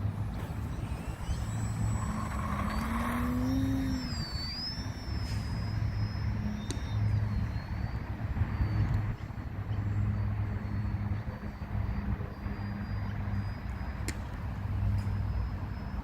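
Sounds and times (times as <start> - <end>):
model plane motor whining: 0.0 - 7.9.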